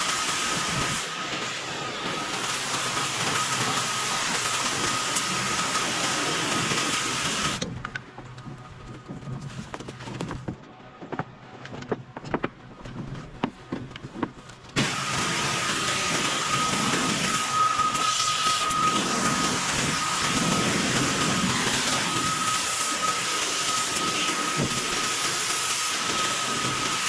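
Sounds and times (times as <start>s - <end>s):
pressure washer spraying: 0.0s - 7.6s, 14.8s - 27.0s.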